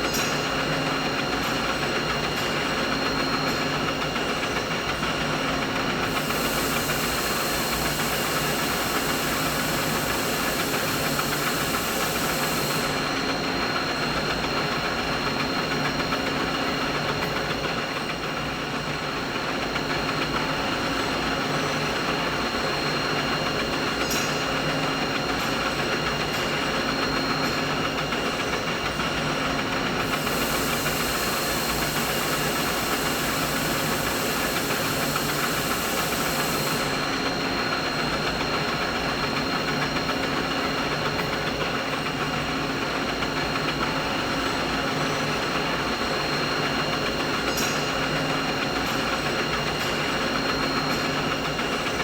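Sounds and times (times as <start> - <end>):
machinery hum with high whine: 0.0 - 52.0
high hiss: 6.1 - 13.0, 30.1 - 37.0.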